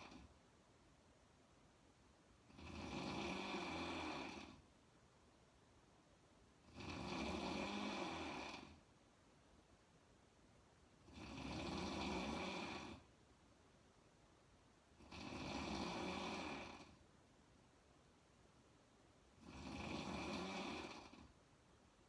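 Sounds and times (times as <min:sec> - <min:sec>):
woman snoring: 0:00.0 - 0:00.3, 0:02.5 - 0:04.6, 0:06.6 - 0:08.8, 0:11.0 - 0:13.1, 0:15.0 - 0:17.0, 0:19.4 - 0:21.3.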